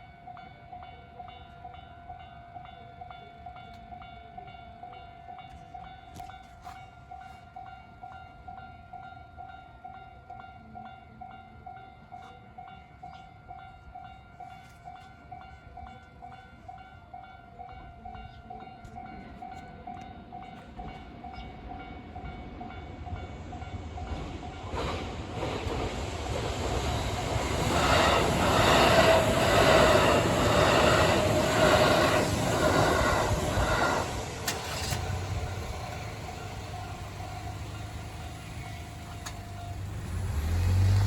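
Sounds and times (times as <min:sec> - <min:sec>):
train wheels clattering: 0:22.4 - 0:41.0.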